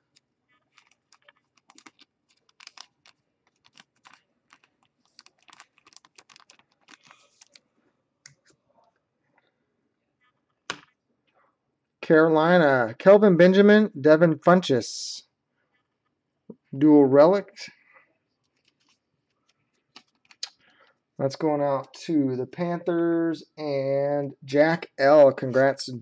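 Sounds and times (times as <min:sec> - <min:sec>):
typing on a computer keyboard: 0:00.1 - 0:07.6.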